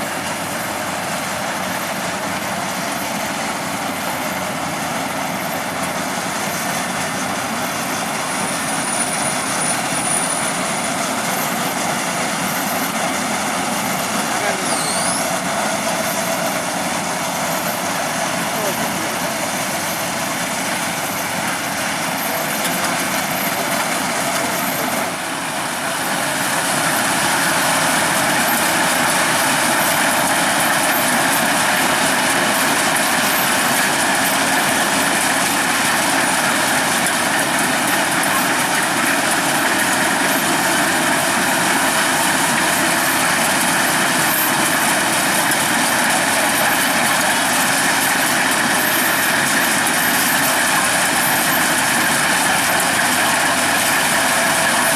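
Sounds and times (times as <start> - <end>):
combine harvester diesel engine: 0.0 - 54.9.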